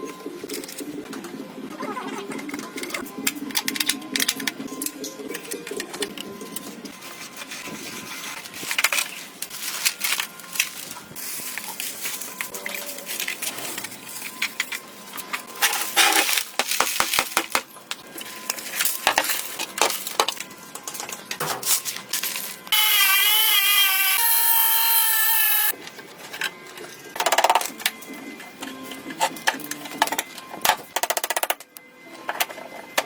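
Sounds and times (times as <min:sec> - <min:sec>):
power tool whining: 0:22.7 - 0:25.8.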